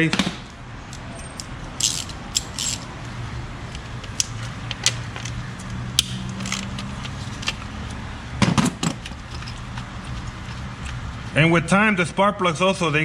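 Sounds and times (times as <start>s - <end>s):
hand tools clinking: 1.2s - 2.9s, 3.7s - 7.7s.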